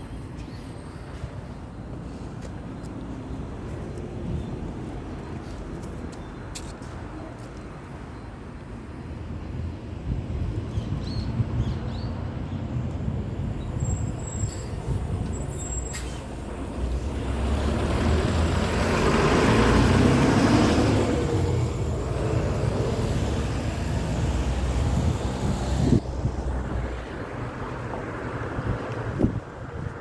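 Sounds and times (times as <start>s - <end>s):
road vehicle passing by: 13.8s - 30.0s.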